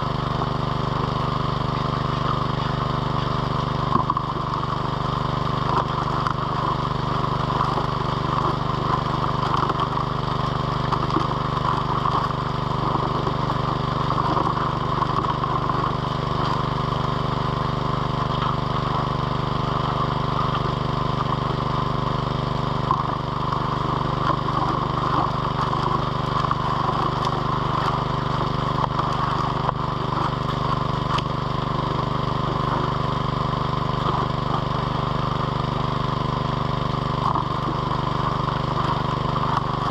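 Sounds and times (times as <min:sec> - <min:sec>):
engine-driven water pump running: 0:00.0 - 0:39.9.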